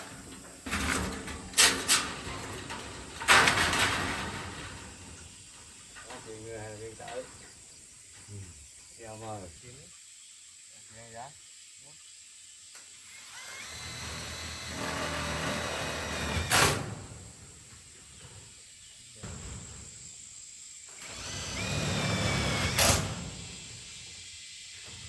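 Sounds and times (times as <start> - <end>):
power tool motor speeding up: 13.0 - 16.5, 21.0 - 23.0.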